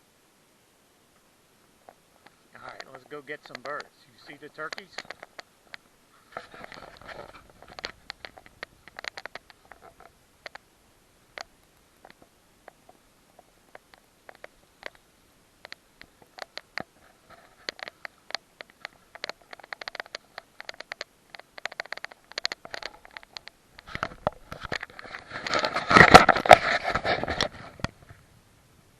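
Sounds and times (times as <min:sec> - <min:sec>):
crackling and rustling clicks: 0:01.8 - 0:10.7, 0:11.3 - 0:28.3
loud scraping rustle: 0:06.1 - 0:10.1, 0:23.8 - 0:28.2.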